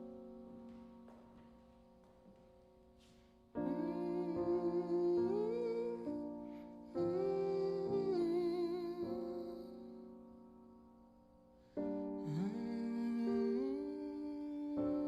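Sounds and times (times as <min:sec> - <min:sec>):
person humming a melody: 0:03.6 - 0:10.1, 0:11.8 - 0:15.0.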